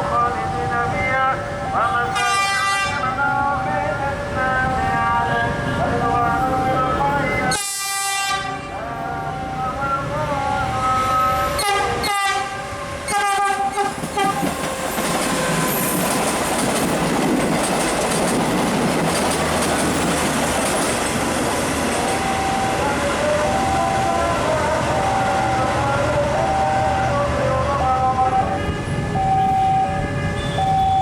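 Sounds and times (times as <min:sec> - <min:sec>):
train rumbling past: 0:00.0 - 0:31.0
train horn blasts: 0:02.1 - 0:03.2, 0:07.5 - 0:08.8, 0:11.6 - 0:14.5, 0:29.9 - 0:30.8
two-note warning tone: 0:28.6 - 0:31.0.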